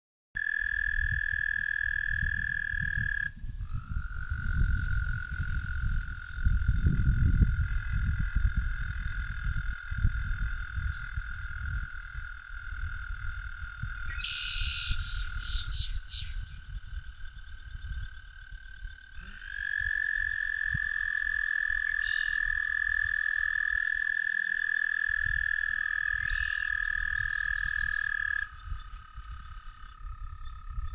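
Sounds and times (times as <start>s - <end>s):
frogs trilling: 0.4s - 30.9s
low rumble: 3.4s - 19.0s.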